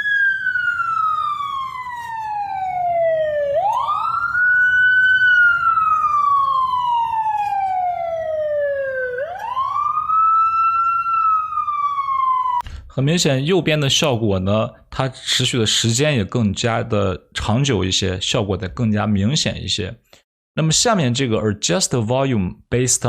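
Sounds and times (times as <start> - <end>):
siren wailing: 0.0 - 12.6.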